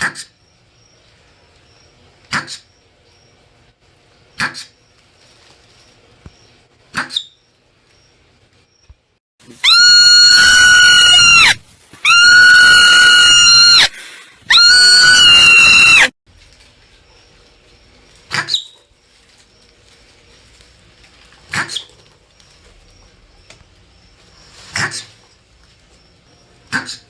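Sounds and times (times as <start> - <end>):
marmot alarm screams: 9.5 - 16.1.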